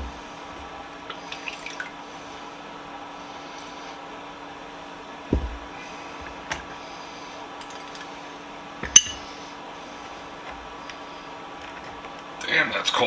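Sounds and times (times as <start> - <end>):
dull thump: 0.0 - 0.8, 5.3 - 6.7, 8.8 - 9.3
steady hum: 0.0 - 13.0.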